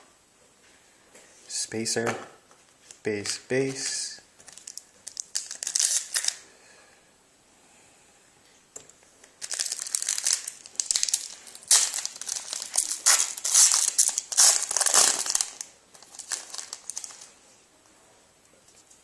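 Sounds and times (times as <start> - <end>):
foil wrapper tearing and crinkling: 4.5 - 6.4, 9.4 - 17.3.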